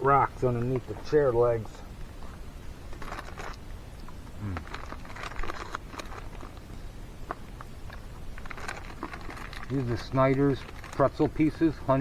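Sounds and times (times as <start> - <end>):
pretzel pieces being chewed: 2.9 - 11.6.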